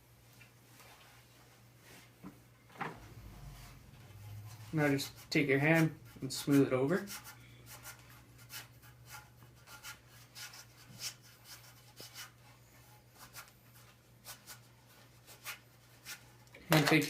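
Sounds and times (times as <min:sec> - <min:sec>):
hand rubbing hockey tape: 0:07.0 - 0:17.0.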